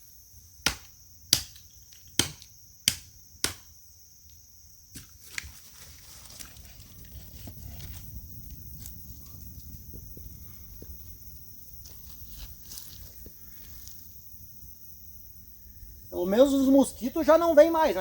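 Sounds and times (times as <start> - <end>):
insects buzzing: 0.0 - 18.0
firewood being chopped: 0.6 - 3.8.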